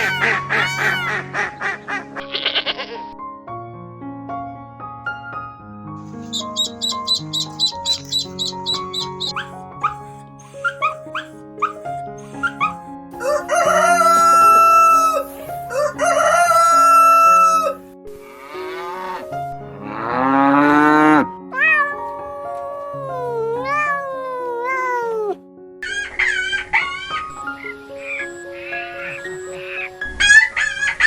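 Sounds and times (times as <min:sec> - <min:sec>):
farm animal calls: 0:00.0 - 0:03.0, 0:06.1 - 0:17.8, 0:26.0 - 0:31.0
background music: 0:00.0 - 0:31.0.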